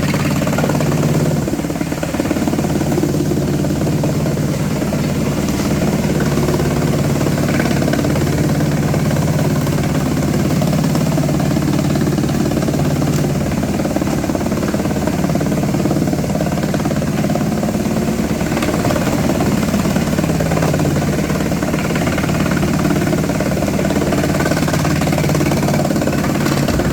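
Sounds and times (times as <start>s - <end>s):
wood chipper droning: 0.0s - 26.9s
rattle: 24.8s - 26.9s.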